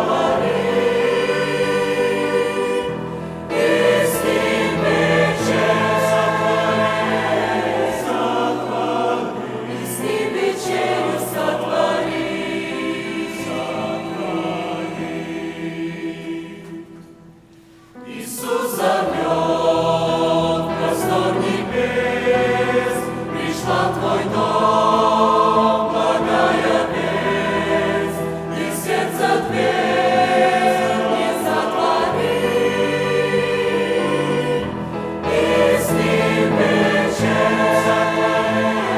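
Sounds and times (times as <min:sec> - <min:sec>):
church choir singing a hymn: 0:00.0 - 0:38.9.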